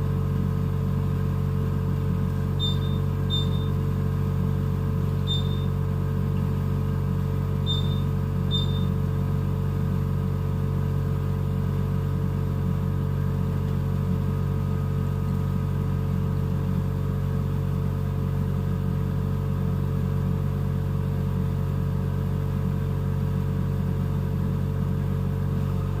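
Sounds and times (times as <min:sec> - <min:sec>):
ventilator mechanical hum: 0:00.0 - 0:26.0
short high beeps: 0:02.6 - 0:03.8, 0:05.3 - 0:05.7, 0:07.7 - 0:08.9.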